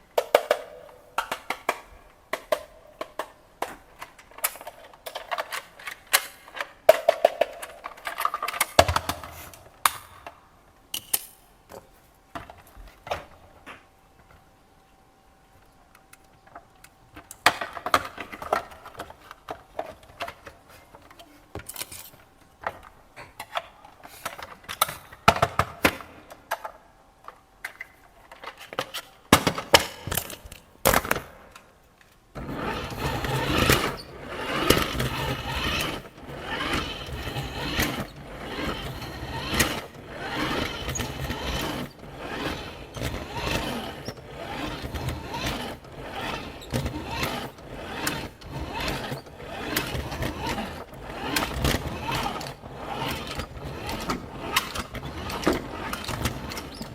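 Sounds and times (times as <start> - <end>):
plastic toy clicks and knocks: 0.2 - 9.3
toy motor whirring and grinding: 32.4 - 56.9.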